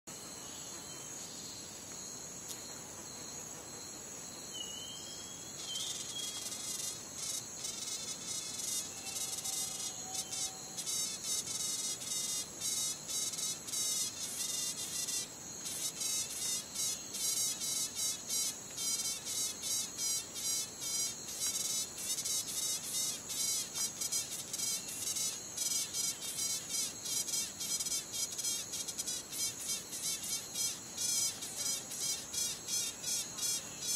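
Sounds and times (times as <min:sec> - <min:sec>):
insect buzzing: 0:00.2 - 0:33.9.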